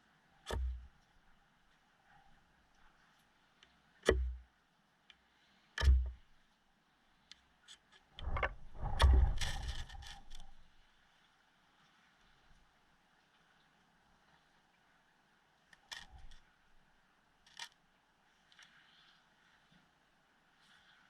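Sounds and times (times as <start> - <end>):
sharp heavy knocks: 5.8 - 6.2.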